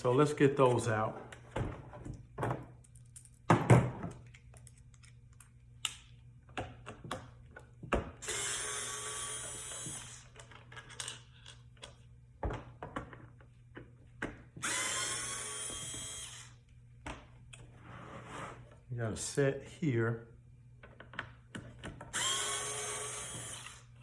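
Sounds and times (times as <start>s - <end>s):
power drill motor running: 8.2s - 10.3s, 14.6s - 16.6s, 22.1s - 24.0s.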